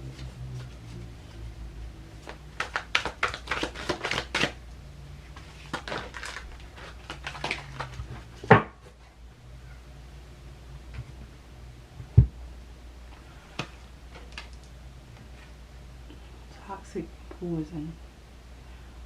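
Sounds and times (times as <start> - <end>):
cards being shuffled: 2.2 - 4.6, 5.3 - 8.3.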